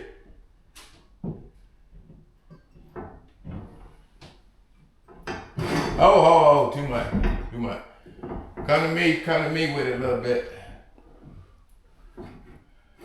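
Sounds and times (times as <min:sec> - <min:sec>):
light knocks and clunks: 0:00.2 - 0:09.0, 0:09.8 - 0:12.8.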